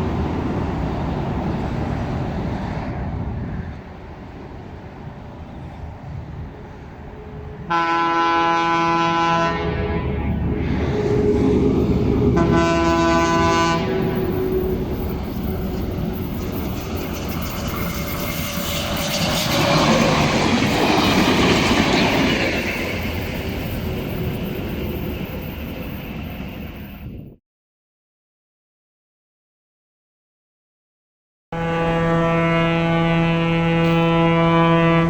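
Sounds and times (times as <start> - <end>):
train rumble and wheel clatter: 0.0 - 27.4, 31.9 - 35.0
locomotive air horn: 7.2 - 15.0, 31.6 - 35.0.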